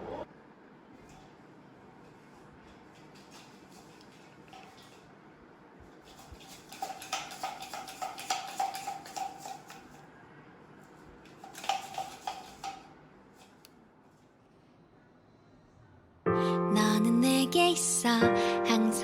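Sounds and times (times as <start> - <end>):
metal utensil clinking in bowl: 6.1 - 9.9.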